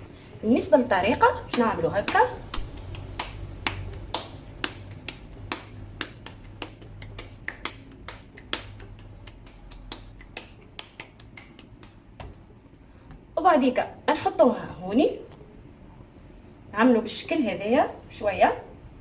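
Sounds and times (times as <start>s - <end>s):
faint low hum: 0.0s - 19.0s
hands tapping dough: 1.2s - 12.5s.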